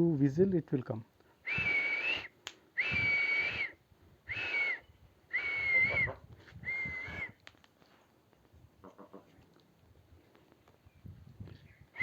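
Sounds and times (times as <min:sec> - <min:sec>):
person whistling: 0:01.4 - 0:07.4.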